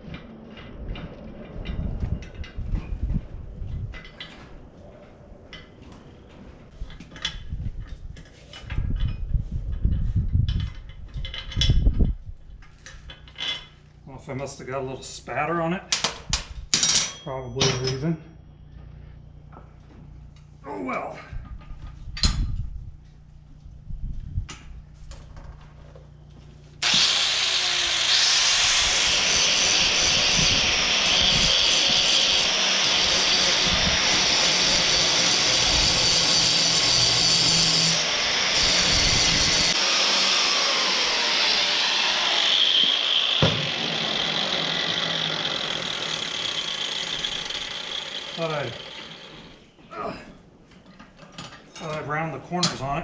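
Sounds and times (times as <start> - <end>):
angle grinder grinding metal: 26.8 - 49.7.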